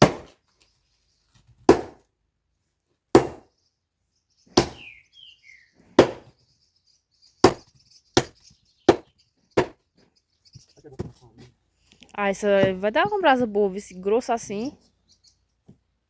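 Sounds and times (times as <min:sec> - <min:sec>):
axe chopping firewood: 0:00.0 - 0:00.4, 0:01.6 - 0:02.1, 0:03.1 - 0:03.5, 0:04.6 - 0:04.9, 0:06.0 - 0:06.3, 0:07.4 - 0:09.8.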